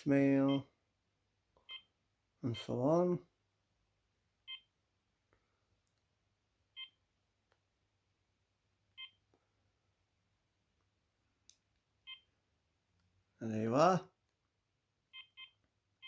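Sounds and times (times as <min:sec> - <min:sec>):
mobile phone key beeps: 0:09.0 - 0:09.2, 0:12.1 - 0:12.3, 0:15.1 - 0:15.6.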